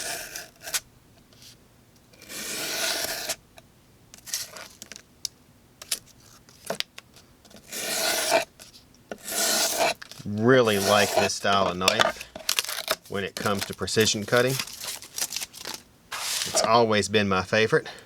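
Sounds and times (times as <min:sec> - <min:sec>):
knife slicing through cardboard: 0:02.2 - 0:03.4, 0:07.6 - 0:08.5, 0:09.2 - 0:10.0, 0:10.6 - 0:11.4.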